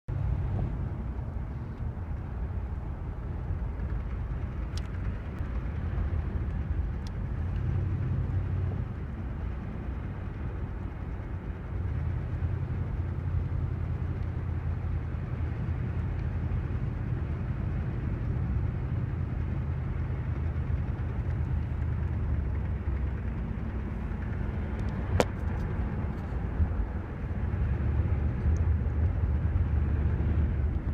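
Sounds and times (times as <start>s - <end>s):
car engine running: 0.1s - 30.9s.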